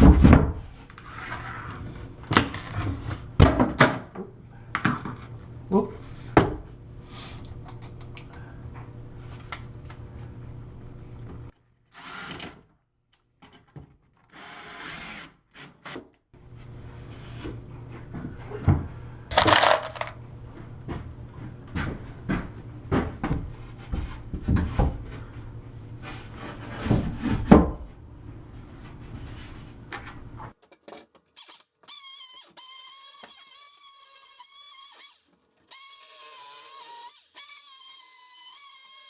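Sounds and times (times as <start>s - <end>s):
tools knocking and tapping: 30.6s - 31.6s
loud scraping burst: 30.6s - 39.0s.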